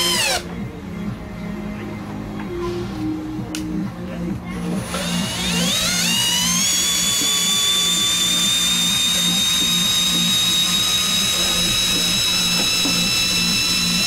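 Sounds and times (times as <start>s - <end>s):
cordless drill motor whining: 0.0s - 0.4s, 4.8s - 14.0s
background music with beat: 0.0s - 14.0s.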